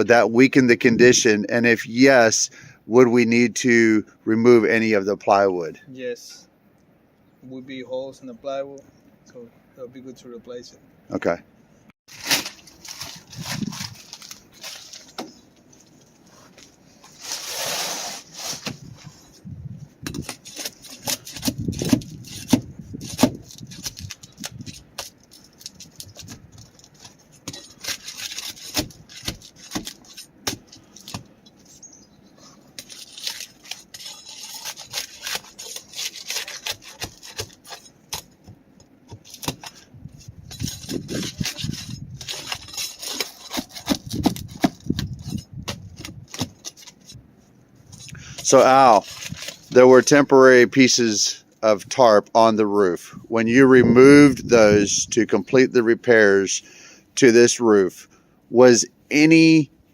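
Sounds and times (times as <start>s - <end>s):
clicks and scraping on roof shingles: 12.1s - 31.8s, 32.4s - 47.2s, 47.9s - 49.8s.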